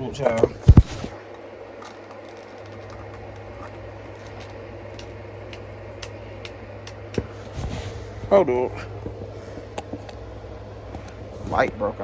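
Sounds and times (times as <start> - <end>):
room noise hum: 0.0 - 12.0
faint handling clicks and scratches: 0.2 - 5.2.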